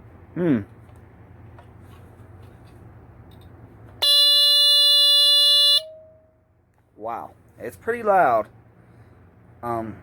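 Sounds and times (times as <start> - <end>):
faint lower tone: 5.8 - 6.5.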